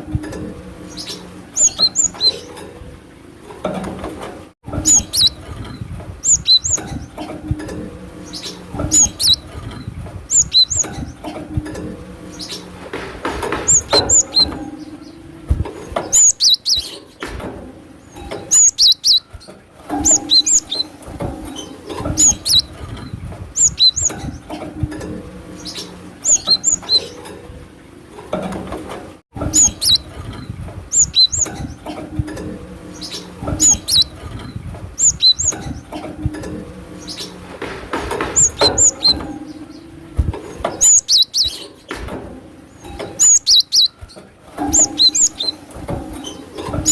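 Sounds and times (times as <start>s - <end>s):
bird chirping: 0.8s - 2.5s, 4.8s - 7.2s, 8.2s - 11.2s, 13.5s - 15.3s, 15.9s - 17.2s, 18.1s - 24.5s, 25.5s - 27.3s, 29.5s - 30.1s, 30.9s - 31.8s, 32.8s - 36.0s, 38.2s - 41.9s, 42.8s - 45.6s.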